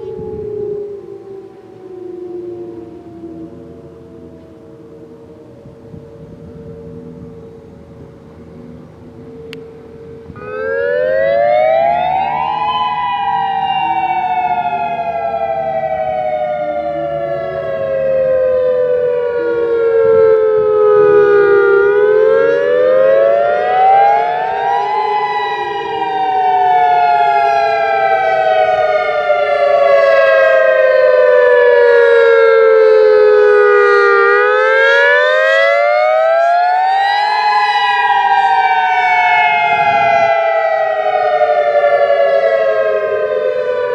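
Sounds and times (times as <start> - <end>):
distant sirens: 0.0 - 43.9
warning siren wailing: 0.0 - 43.9.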